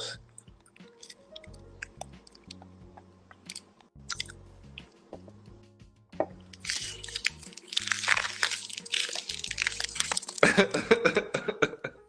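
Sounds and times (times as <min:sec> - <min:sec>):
background music with bass line: 0:00.0 - 0:12.0
crackling and crunching: 0:06.2 - 0:11.4.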